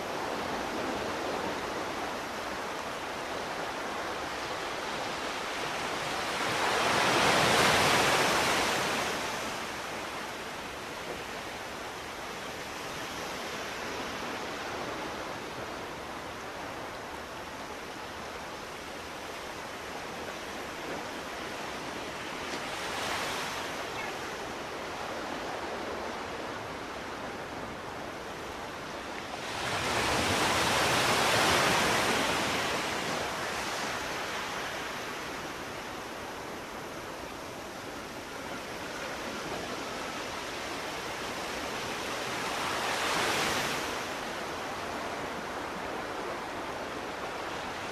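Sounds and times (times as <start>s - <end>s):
ocean waves on a shore: 0.0s - 47.9s.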